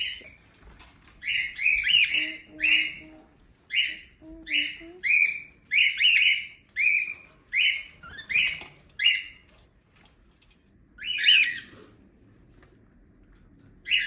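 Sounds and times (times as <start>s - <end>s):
cockatiel squawking: 1.2s - 9.3s.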